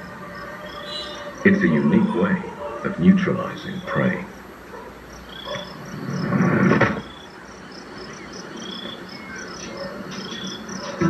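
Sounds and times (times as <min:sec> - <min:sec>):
insects chirping: 0:00.0 - 0:11.0
rough rustling noise: 0:04.9 - 0:07.4.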